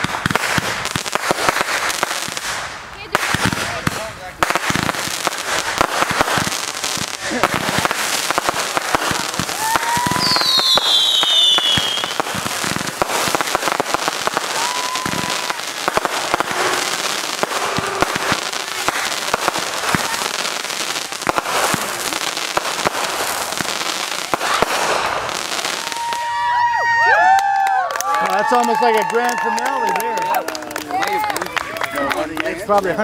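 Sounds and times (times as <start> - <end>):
firework barrage crackling: 0.0 - 33.0
falling firework whistle: 9.3 - 12.3, 14.3 - 18.4
short firework whistles: 9.6 - 12.3.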